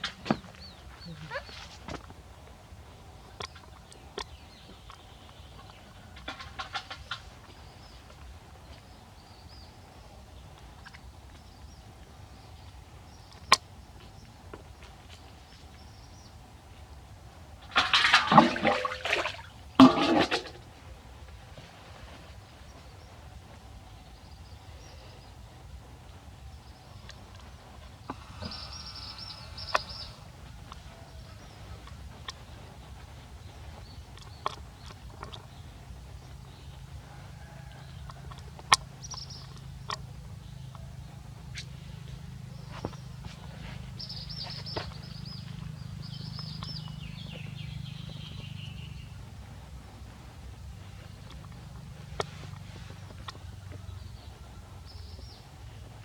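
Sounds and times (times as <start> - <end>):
running water: 17.6 - 20.6
water gushing and splashing: 17.7 - 20.6.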